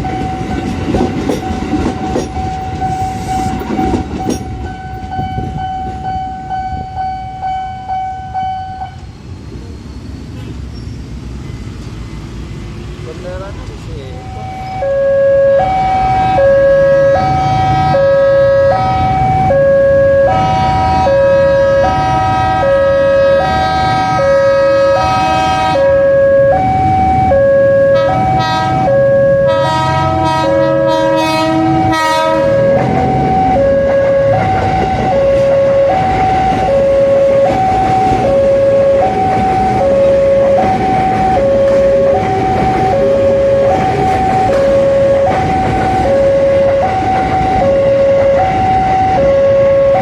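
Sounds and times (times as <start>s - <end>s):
two-tone electronic alarm: 0.0s - 9.0s, 14.1s - 50.0s
other electronic tones: 31.8s - 50.0s.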